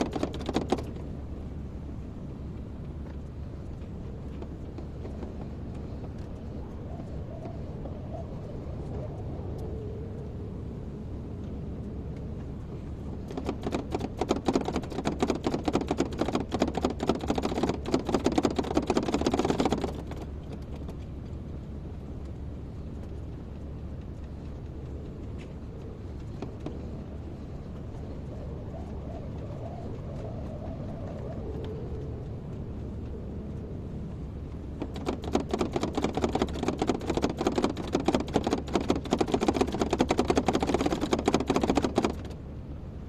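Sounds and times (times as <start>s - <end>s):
loud clattering knocks and rattles: 0.0s - 1.0s, 13.2s - 21.0s, 34.8s - 42.4s.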